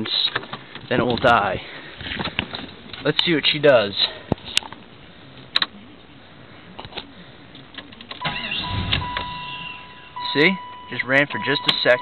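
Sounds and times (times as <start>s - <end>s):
steady high tone: 8.2s - 12.0s.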